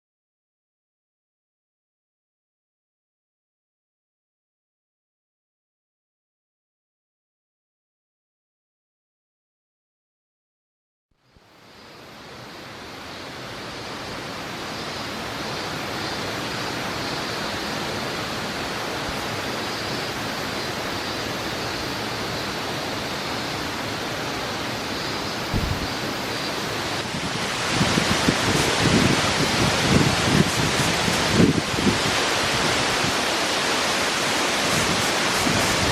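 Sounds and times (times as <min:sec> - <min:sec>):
waterfall rushing: 0:25.5 - 0:25.9
wind buffeting microphone: 0:25.5 - 0:26.0.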